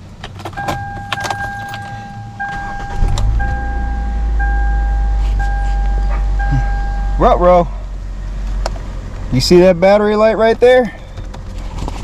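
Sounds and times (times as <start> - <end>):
car engine starting and idling: 0.0 - 12.0
dashboard warning chime: 0.5 - 7.4.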